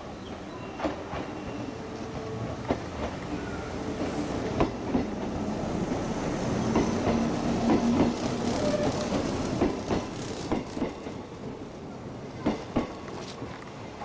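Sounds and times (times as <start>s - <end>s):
train rumble: 0.2s - 14.0s
train wheels clacking over rails: 2.6s - 11.3s, 12.4s - 13.4s.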